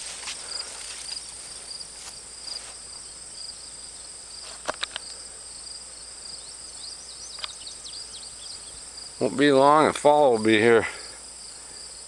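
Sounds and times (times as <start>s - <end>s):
faint rustles: 0.0s - 2.9s
crickets and insects trilling: 0.0s - 12.0s.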